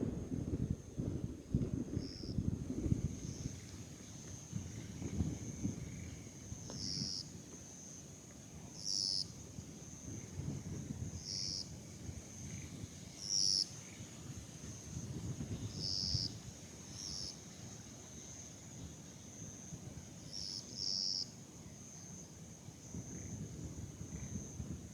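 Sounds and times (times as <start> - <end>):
insect chirping bursts: 2.0 - 8.0, 11.2 - 11.7, 12.4 - 13.8, 14.8 - 18.6, 20.2 - 21.4.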